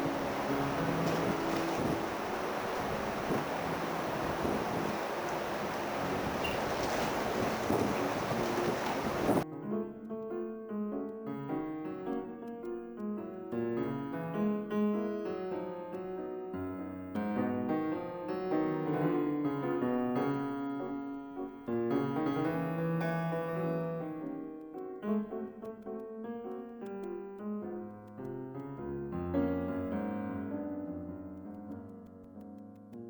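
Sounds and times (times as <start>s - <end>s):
piano music: 0.0s - 32.4s.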